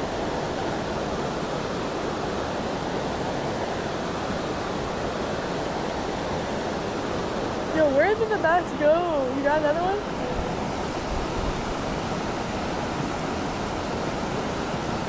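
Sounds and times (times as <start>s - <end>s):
creek water rushing over rocks: 0.0s - 15.0s.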